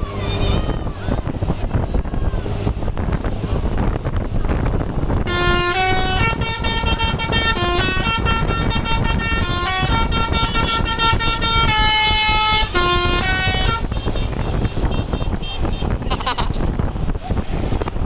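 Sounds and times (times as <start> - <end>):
rumble of noise: 0.0 - 18.0
bus air horn tune: 5.2 - 16.0.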